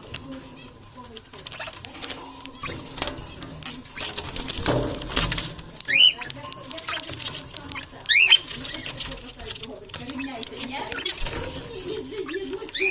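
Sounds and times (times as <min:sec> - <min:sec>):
parrot squeaks: 0:01.4 - 0:04.2, 0:05.8 - 0:09.3, 0:09.9 - 0:12.9.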